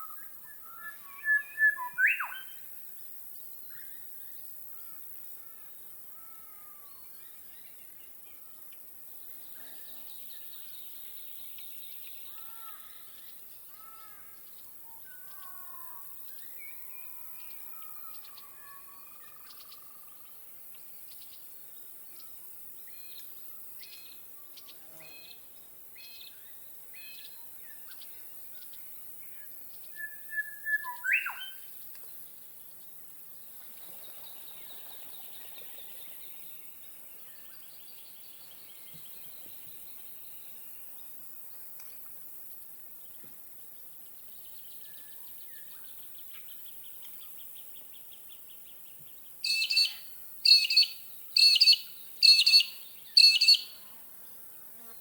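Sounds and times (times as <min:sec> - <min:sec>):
bird whistled calls: 0:00.0 - 0:02.5, 0:29.9 - 0:31.6, 0:49.4 - 0:53.8
faint steady hiss: 0:00.0 - 0:55.0
insects trilling: 0:48.6 - 0:55.0
distant birds calling: 0:49.4 - 0:53.7.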